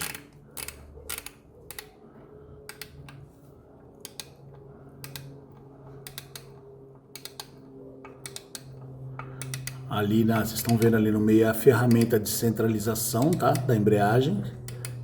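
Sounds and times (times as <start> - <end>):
ratchet wrench clicking: 0.0 - 1.9, 5.0 - 5.3, 6.0 - 6.6, 7.2 - 7.6, 8.2 - 8.7, 9.4 - 9.8, 11.8 - 12.2, 14.6 - 15.0
faint steady hum: 0.0 - 15.0.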